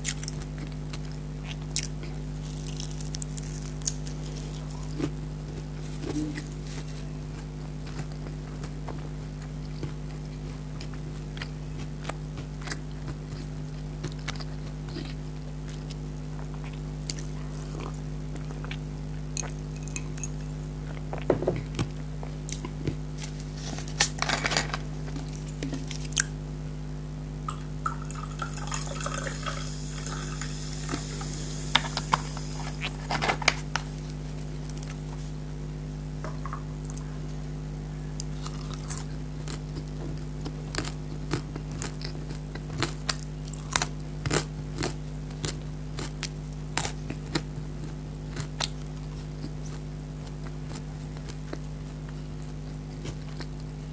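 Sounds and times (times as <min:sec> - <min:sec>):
person chewing and crunching: 0:00.0 - 0:26.4, 0:27.5 - 0:35.2, 0:38.2 - 0:53.9
steady low hum: 0:00.0 - 0:53.9
hissing noise: 0:29.4 - 0:32.9.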